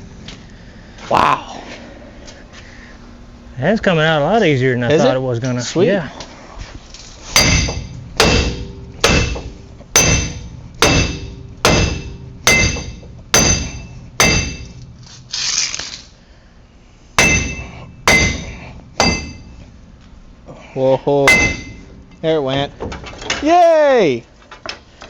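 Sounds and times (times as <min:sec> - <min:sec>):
hammer blows on metal: 0:07.3 - 0:14.8, 0:17.2 - 0:19.6, 0:21.2 - 0:21.9.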